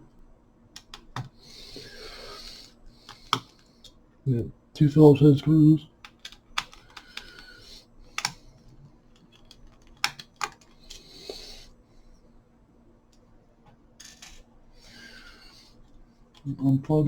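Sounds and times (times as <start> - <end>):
screwdriver clicking on laptop chassis: 3.1 - 3.6, 8.2 - 8.4, 9.2 - 10.7.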